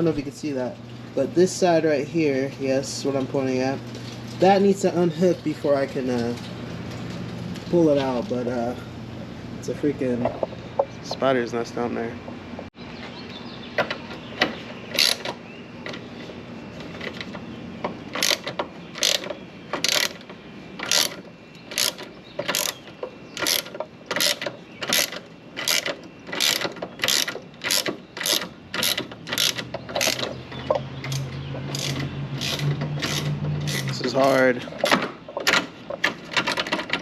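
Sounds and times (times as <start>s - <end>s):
ratchet wrench clicking: 15.0s - 15.2s, 18.2s - 20.2s, 20.8s - 22.8s, 23.4s - 30.4s, 31.1s - 34.0s.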